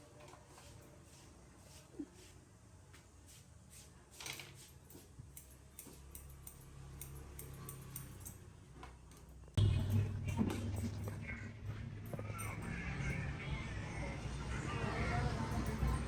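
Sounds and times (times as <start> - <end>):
scissors snipping hair: 4.9 - 8.4
low steady hum: 9.6 - 14.6.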